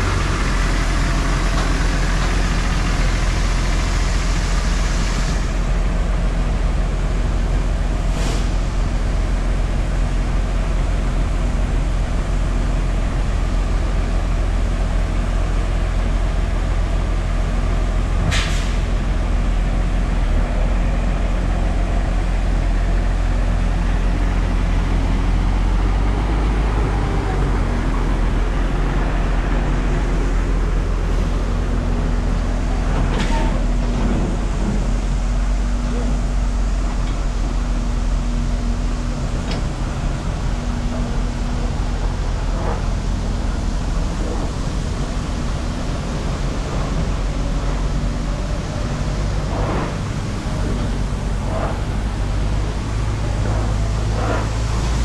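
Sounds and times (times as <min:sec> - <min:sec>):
tractor diesel engine humming: 0:00.0 - 0:55.0
short air hisses: 0:04.0 - 0:05.7, 0:08.1 - 0:08.8, 0:18.3 - 0:18.9.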